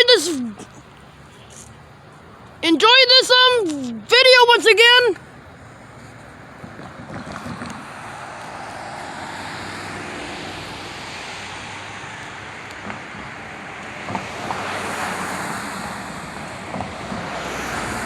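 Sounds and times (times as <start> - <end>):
train wheels rumbling on rail: 6.0 - 11.0.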